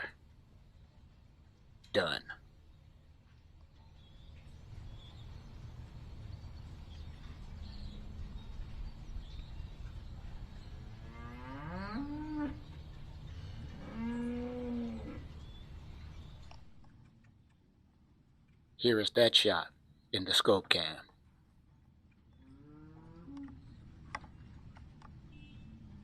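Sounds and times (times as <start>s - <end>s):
cattle mooing: 11.0s - 12.6s, 13.6s - 15.3s, 22.4s - 23.6s.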